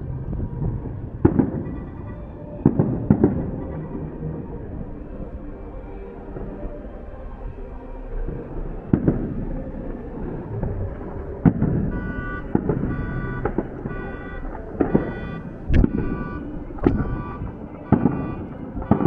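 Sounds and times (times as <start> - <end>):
rumble of fireworks bursts: 0.0 - 5.0, 8.1 - 19.0
fireworks bangs: 11.4 - 19.0
beeping tone: 11.8 - 19.0.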